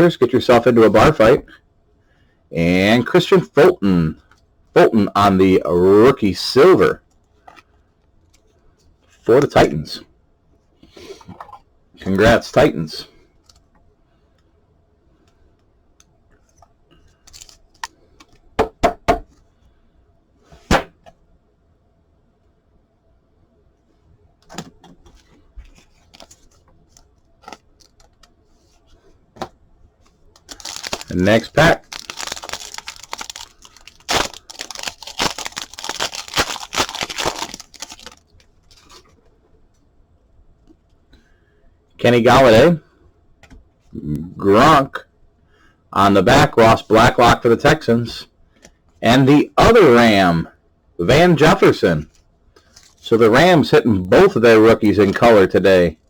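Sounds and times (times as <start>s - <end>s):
cards rustling: 16.4s - 18.5s, 24.4s - 39.3s, 52.0s - 53.1s
wrapper tearing and crinkling: 30.4s - 39.0s.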